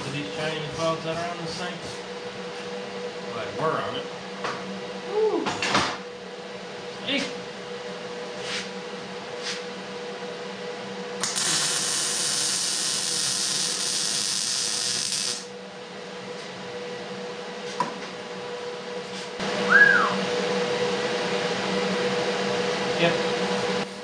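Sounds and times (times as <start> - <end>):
welder hissing: 11.2 - 15.5.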